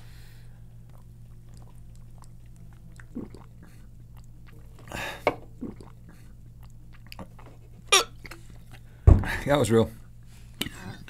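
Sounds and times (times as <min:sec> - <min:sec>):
person gulping soda: 0:00.9 - 0:08.4.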